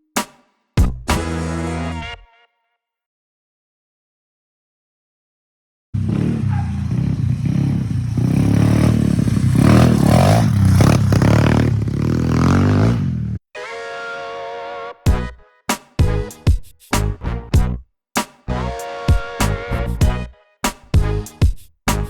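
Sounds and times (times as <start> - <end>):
motorbike engine revving: 6.0 - 13.4.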